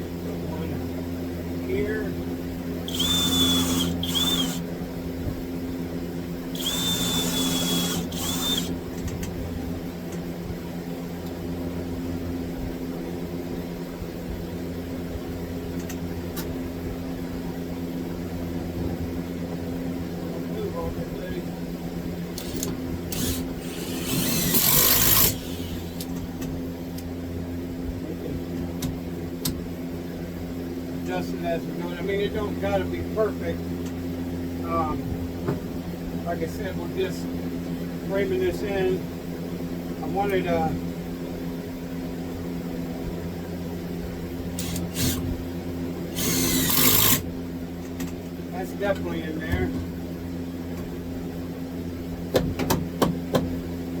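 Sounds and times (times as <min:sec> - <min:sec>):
steady low hum: 0:00.0 - 0:54.0
cordless drill driving screw: 0:02.9 - 0:04.6, 0:06.6 - 0:08.8, 0:22.4 - 0:26.3, 0:44.6 - 0:45.3, 0:46.1 - 0:47.3.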